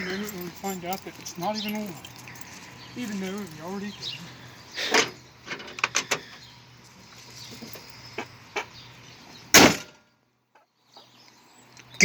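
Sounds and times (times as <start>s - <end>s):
car hood slamming shut: 9.6s - 9.9s.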